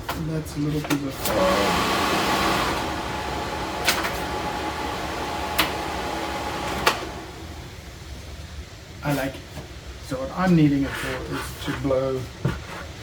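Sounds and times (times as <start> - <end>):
faint motor whine: 0.5 - 8.6
blower air rushing: 1.2 - 8.4.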